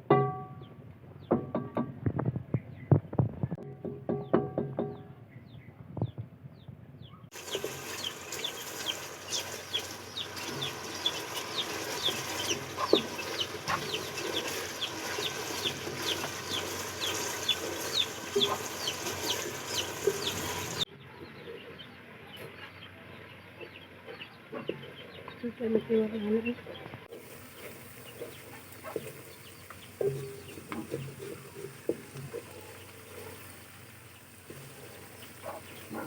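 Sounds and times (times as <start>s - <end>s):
chicks cheeping: 5.4s - 36.0s
steady hiss: 27.1s - 36.0s.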